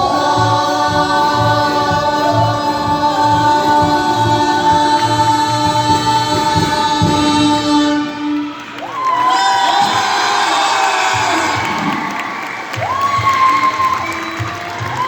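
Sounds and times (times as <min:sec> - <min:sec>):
singers and ensemble sustained chord: 0:00.0 - 0:08.8.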